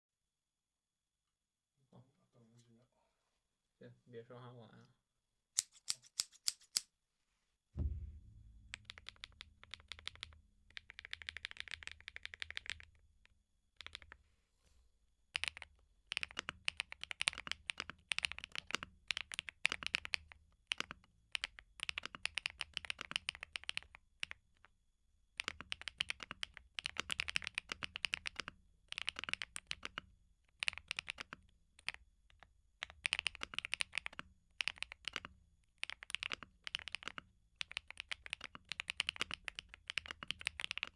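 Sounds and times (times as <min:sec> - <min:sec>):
mechanical keyboard typing: 0:08.8 - 0:13.0, 0:13.8 - 0:14.2, 0:15.4 - 0:24.7, 0:25.4 - 0:40.9.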